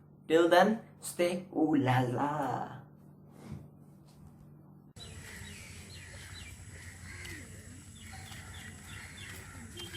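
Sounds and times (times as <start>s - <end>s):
steady low hum: 2.8s - 9.9s
small birds chirping: 5.0s - 9.9s.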